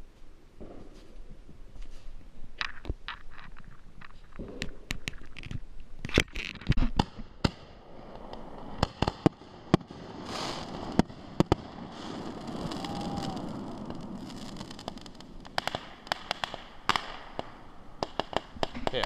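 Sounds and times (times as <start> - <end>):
fireworks bangs and pops: 2.6 - 19.0
firework hiss: 7.0 - 19.0.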